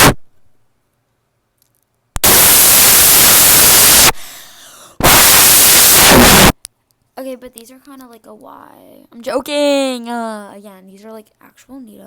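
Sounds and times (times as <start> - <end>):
air blown into microphone: 5.0 - 6.5.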